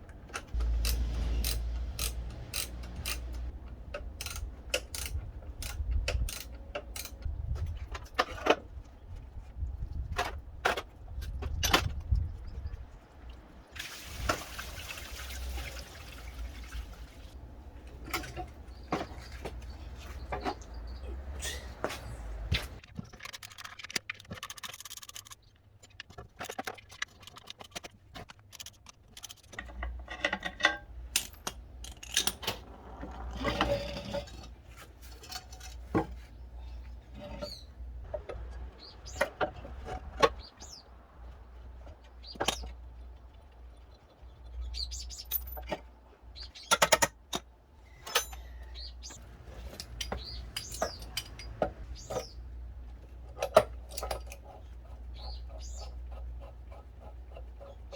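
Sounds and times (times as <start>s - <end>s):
metal tools clinking and rattling: 22.6s - 36.3s, 45.1s - 45.9s, 46.7s - 52.4s, 53.2s - 54.7s.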